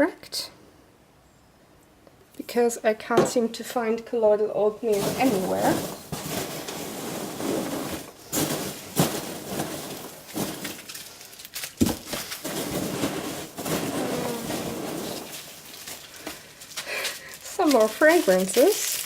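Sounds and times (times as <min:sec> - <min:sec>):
packing material rustling: 0:04.9 - 0:19.0.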